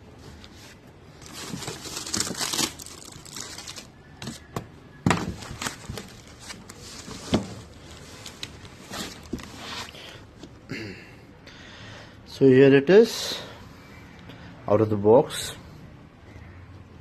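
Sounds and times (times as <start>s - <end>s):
box packaging rustling: 0.6s - 10.1s.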